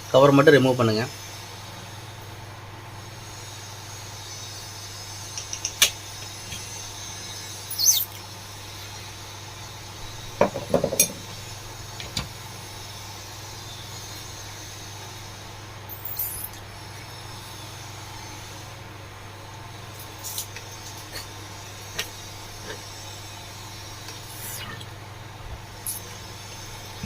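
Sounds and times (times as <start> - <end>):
steady low hum: 6.1 - 27.0.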